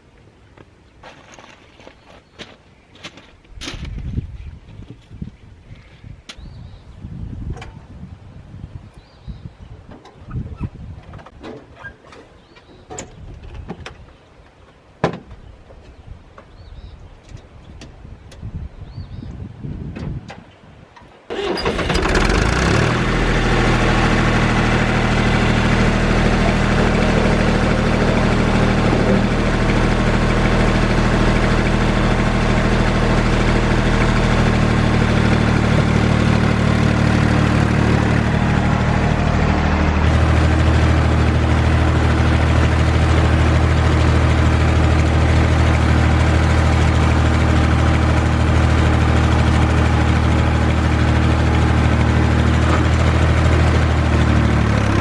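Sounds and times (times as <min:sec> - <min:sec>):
engine starting and idling: 0:21.3 - 0:55.0.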